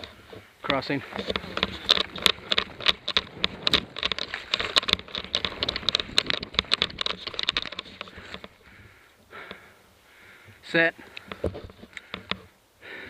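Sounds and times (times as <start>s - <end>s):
loose gear rattling: 0.0s - 8.8s
running footsteps: 0.0s - 12.4s.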